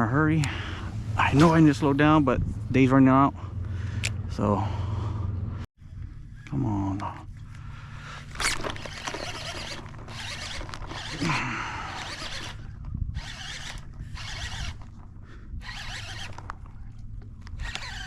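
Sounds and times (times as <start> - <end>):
fishing reel whirring: 8.3 - 15.0, 15.6 - 16.6, 17.5 - 18.0.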